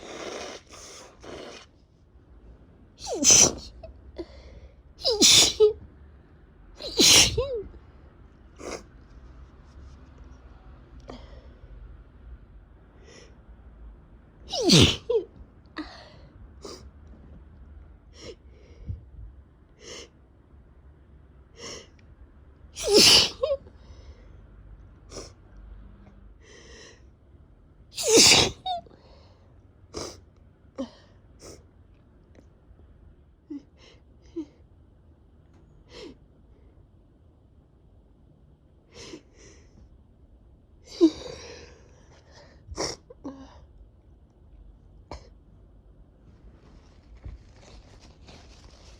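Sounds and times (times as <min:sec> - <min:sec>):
person sneezing: 0:03.0 - 0:03.8, 0:05.0 - 0:05.7, 0:06.8 - 0:07.7, 0:14.5 - 0:15.2, 0:22.8 - 0:23.5, 0:28.0 - 0:28.7.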